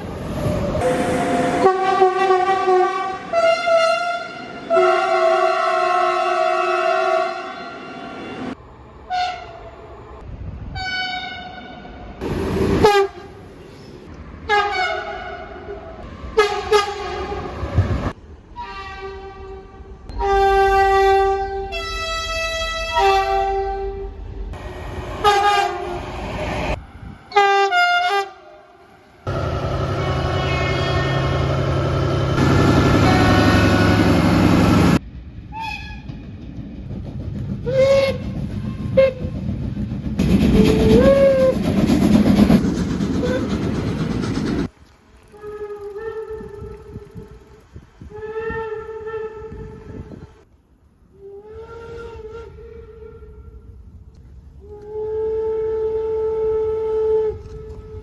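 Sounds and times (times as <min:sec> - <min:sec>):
train rolling past: 0:00.0 - 0:50.5
train horn blasts: 0:00.8 - 0:09.7, 0:10.7 - 0:12.0, 0:12.8 - 0:13.4, 0:14.5 - 0:17.6, 0:18.6 - 0:24.2, 0:25.2 - 0:26.0, 0:27.3 - 0:31.7, 0:32.4 - 0:34.9, 0:45.3 - 0:47.4, 0:48.0 - 0:50.4, 0:51.2 - 0:53.8, 0:54.6 - 0:58.0.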